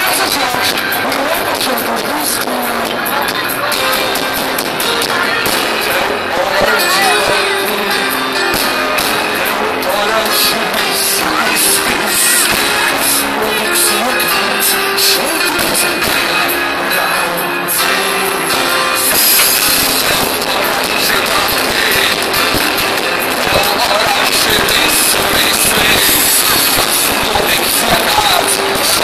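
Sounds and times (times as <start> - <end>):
live rock band playing: 0.0 - 29.0
drum strikes: 2.8 - 14.0.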